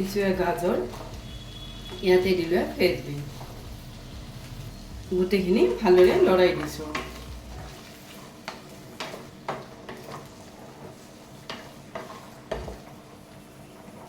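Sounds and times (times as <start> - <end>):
vegetables sizzling in oil: 0.0 - 14.0
utensil scraping against pan: 5.6 - 12.8.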